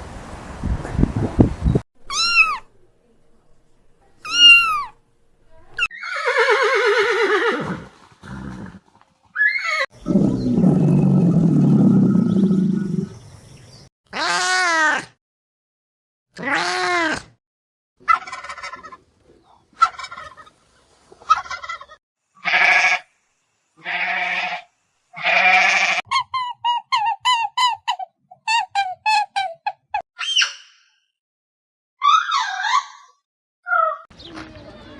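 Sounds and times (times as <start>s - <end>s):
arched animal cries: 2.1s - 2.7s, 4.2s - 5.0s, 5.8s - 7.6s, 25.2s - 29.2s.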